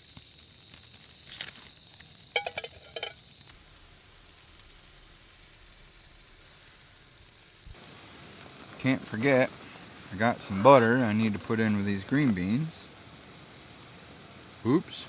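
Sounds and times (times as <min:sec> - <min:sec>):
beans sizzling in a pan: 0:00.0 - 0:15.0
utensil clinking and scraping pan: 0:02.4 - 0:03.2.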